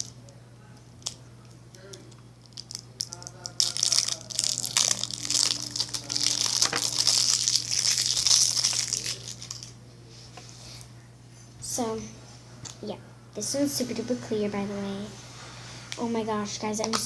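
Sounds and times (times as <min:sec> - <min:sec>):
slime crinkling and crackling: 0:01.8 - 0:09.8.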